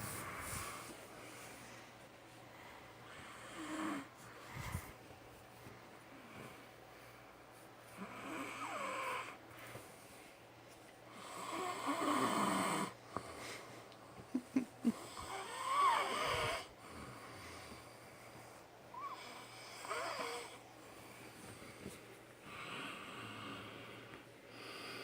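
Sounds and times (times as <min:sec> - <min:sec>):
man snoring loudly: 0:11.2 - 0:12.9, 0:15.1 - 0:16.7.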